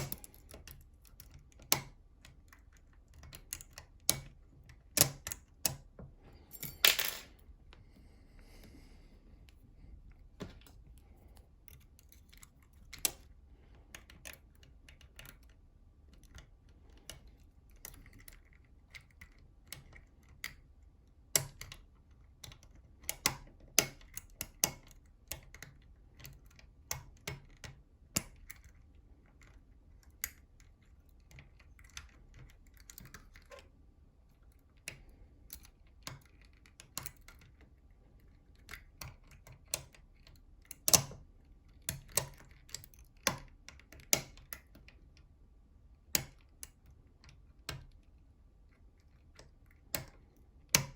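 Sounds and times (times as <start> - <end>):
metallic clicks of lock-picking tools: 0.0 - 7.3, 10.4 - 13.3, 21.3 - 33.7, 34.4 - 45.0, 49.0 - 50.9.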